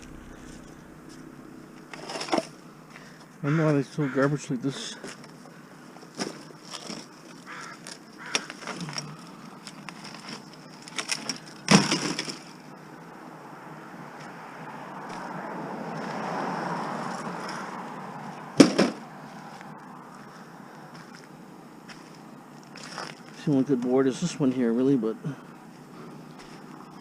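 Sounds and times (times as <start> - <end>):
car passing: 0.0 - 4.2, 12.6 - 21.0.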